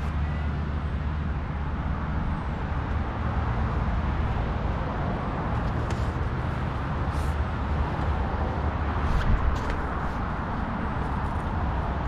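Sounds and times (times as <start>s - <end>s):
vehicle rumble: 0.0s - 12.0s.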